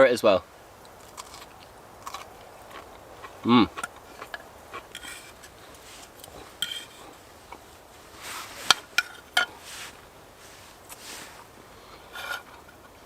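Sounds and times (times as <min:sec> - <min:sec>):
utensil clinking and scraping dish: 0:06.2 - 0:07.2.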